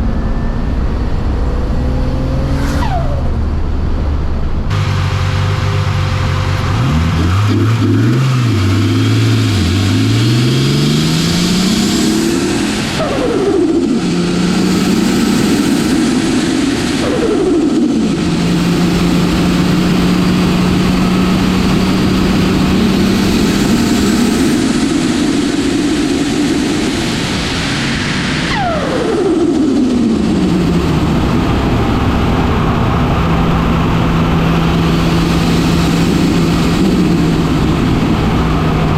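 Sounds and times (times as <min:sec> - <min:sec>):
car engine revving: 0:00.0 - 0:38.9.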